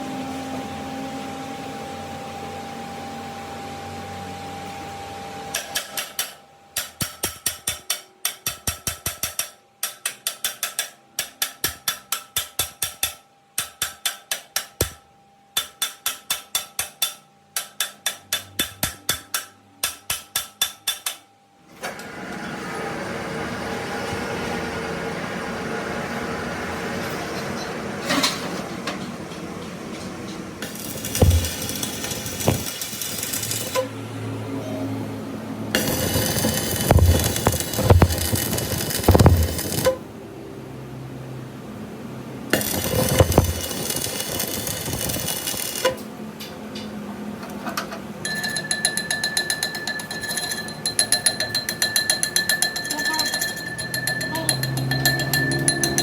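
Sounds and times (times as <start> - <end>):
workshop machine running: 0.0 - 56.0
rapid hammer strikes on metal: 5.5 - 21.3, 30.6 - 33.9, 35.7 - 40.0, 42.5 - 46.0, 48.2 - 56.0
knocks: 31.2 - 31.8.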